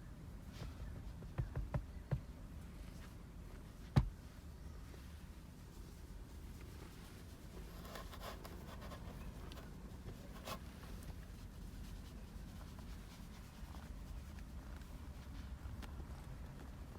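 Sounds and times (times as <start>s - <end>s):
faint scratching and rustling: 4.8s - 15.8s.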